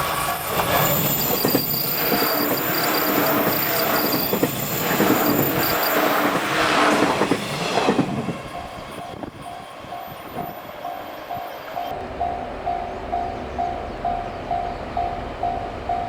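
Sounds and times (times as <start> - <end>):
crossing warning bell ringing: 0.0 - 6.5, 8.1 - 16.0
train wheels clattering on rail: 0.0 - 12.0.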